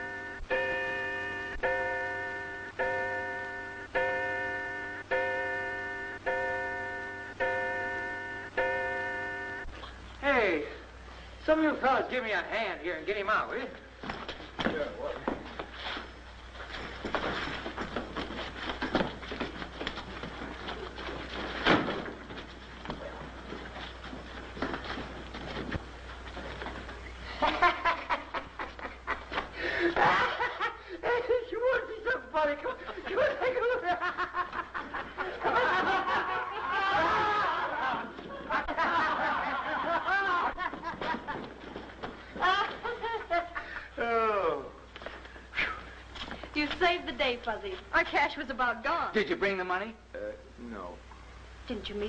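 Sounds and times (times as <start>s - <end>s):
steady low hum: 0.0s - 52.0s
shuffling noises: 13.8s - 27.4s, 37.7s - 39.1s, 40.5s - 43.6s, 44.8s - 47.9s
men laughing: 27.2s - 43.9s.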